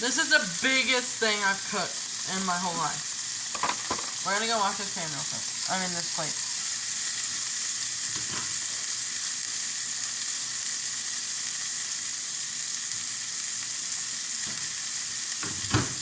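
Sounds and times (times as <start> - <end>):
burgers sizzling in a skillet: 0.0 - 16.0.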